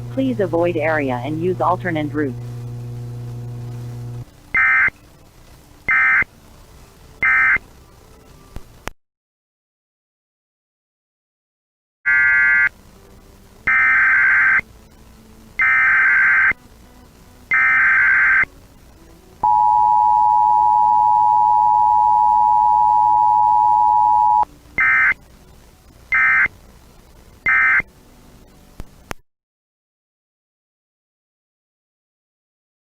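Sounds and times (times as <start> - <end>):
screeching digital data bursts: 15.6 - 16.6, 17.5 - 18.5, 27.4 - 27.8
two-tone attention signal: 19.4 - 25.2.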